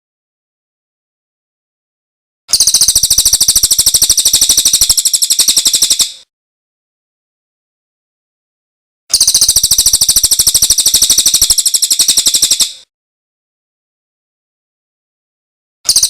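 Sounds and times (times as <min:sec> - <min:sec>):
songbird trill: 0:02.5 - 0:06.2, 0:09.1 - 0:12.8.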